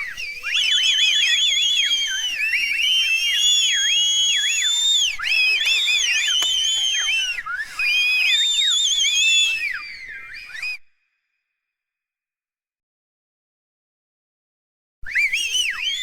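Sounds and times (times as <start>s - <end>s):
crowd whistling: 0.0s - 11.0s, 15.0s - 16.0s.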